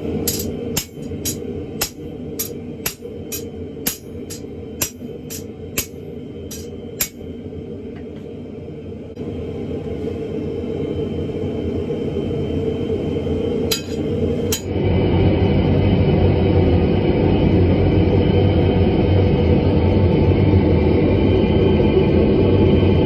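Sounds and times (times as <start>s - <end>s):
metallic hammer strikes: 0.2s - 7.2s, 13.7s - 14.7s.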